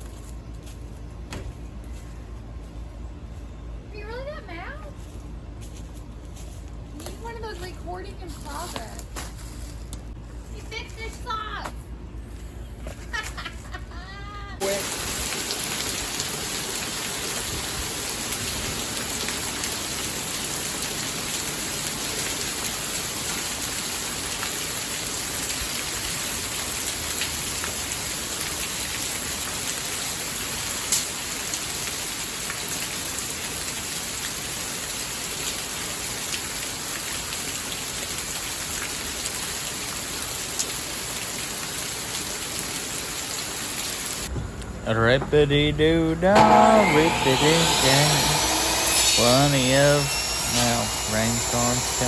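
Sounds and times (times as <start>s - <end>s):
steady rain falling: 14.6s - 44.3s.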